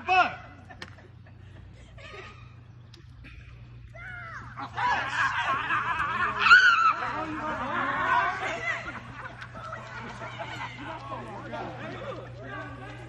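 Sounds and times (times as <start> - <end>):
people shouting: 3.9 - 13.0
group of people laughing: 4.6 - 13.0.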